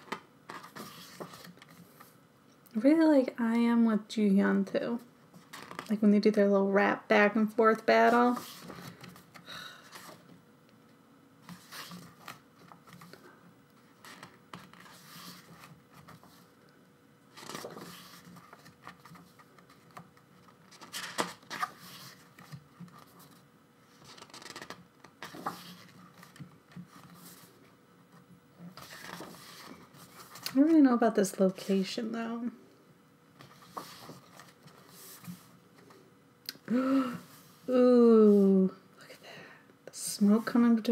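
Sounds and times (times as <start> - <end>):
paper pages rustling: 0.0 - 2.2, 8.0 - 10.3, 11.4 - 13.2, 13.8 - 16.5, 17.3 - 30.7, 33.4 - 36.0.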